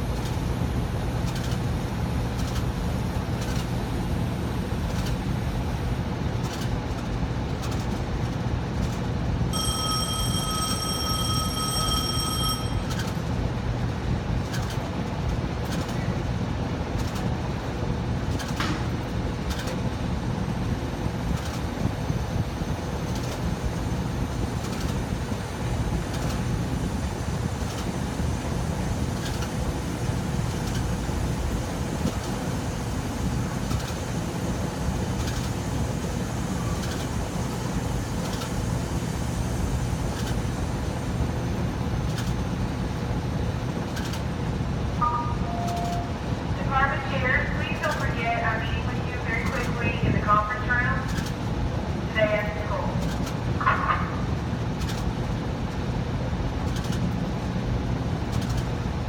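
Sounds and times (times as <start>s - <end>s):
air conditioning blower humming: 0.0s - 59.0s.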